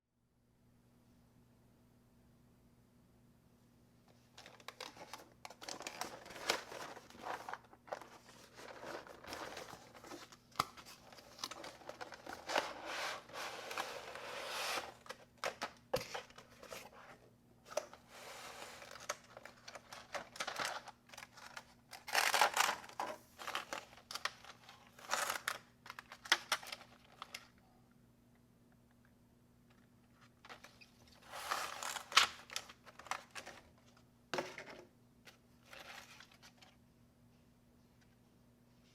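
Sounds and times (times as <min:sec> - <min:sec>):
packaging crinkling and tearing: 0:04.4 - 0:16.3, 0:18.8 - 0:27.5, 0:30.5 - 0:33.6.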